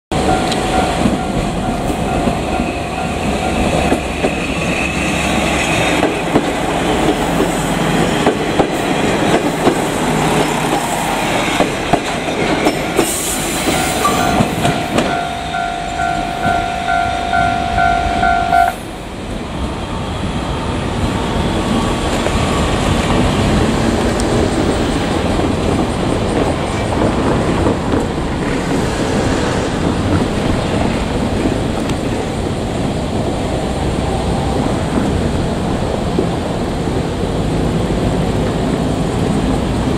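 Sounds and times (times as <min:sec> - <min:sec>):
diesel train passing: 0:00.1 - 0:39.9
level crossing bell ringing: 0:14.0 - 0:18.7.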